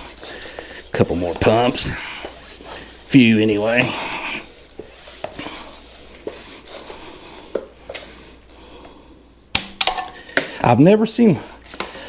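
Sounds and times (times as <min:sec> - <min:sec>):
hand air pump hissing: 0:00.0 - 0:07.6.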